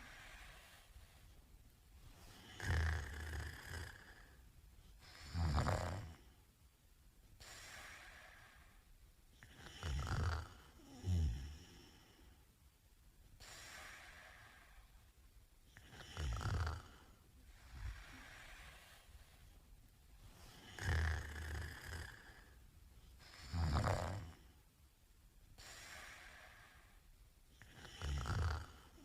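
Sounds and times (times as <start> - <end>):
soft breathing: 0.0 - 6.6, 7.3 - 12.6, 13.3 - 24.7, 25.5 - 29.0
man snoring: 2.3 - 4.4, 5.1 - 6.3, 9.4 - 12.1, 15.8 - 17.1, 20.5 - 22.6, 23.3 - 24.4, 27.6 - 29.0.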